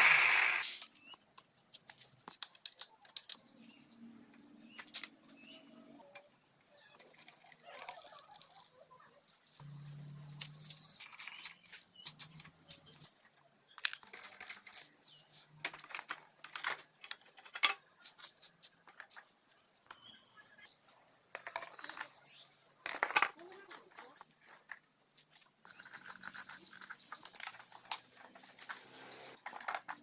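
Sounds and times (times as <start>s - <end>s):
hiss: 0.0s - 0.8s.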